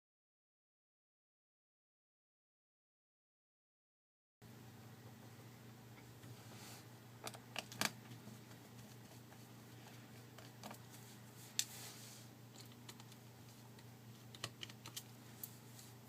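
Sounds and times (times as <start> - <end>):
steady low hum: 4.4 - 16.0.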